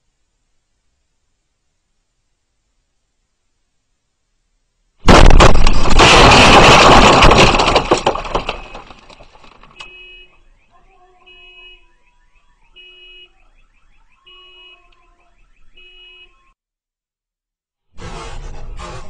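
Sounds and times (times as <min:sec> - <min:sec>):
explosion blast rumble: 0:05.0 - 0:07.8
alarm beeping: 0:09.8 - 0:16.6.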